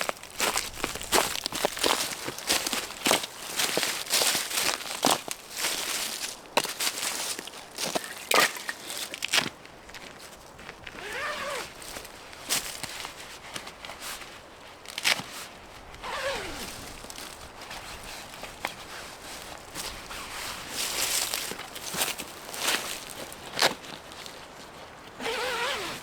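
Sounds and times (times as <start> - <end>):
twigs cracking: 0.0 - 13.0, 20.8 - 24.8
footsteps on forest floor: 0.0 - 25.1.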